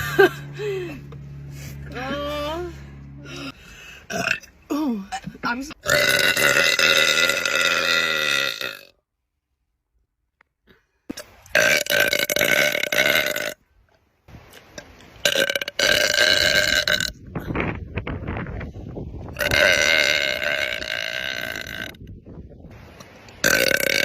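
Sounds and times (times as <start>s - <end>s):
woman burping loudly: 3.2s - 8.9s, 11.5s - 13.6s, 15.2s - 17.2s, 19.4s - 22.0s, 23.4s - 24.0s.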